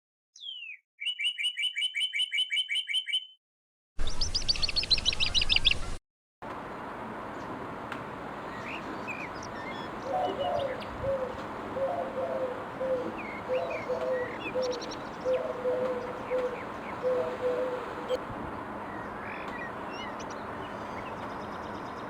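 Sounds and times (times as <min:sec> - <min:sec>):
faint small bird chirps: 0:00.4 - 0:03.4
dove cooing: 0:08.5 - 0:18.2.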